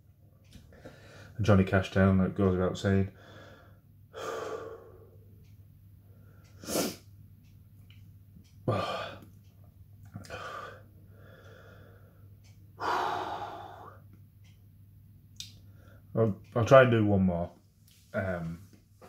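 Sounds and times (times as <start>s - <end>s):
man breathing hard through mouth: 3.2s - 5.2s, 12.8s - 14.0s.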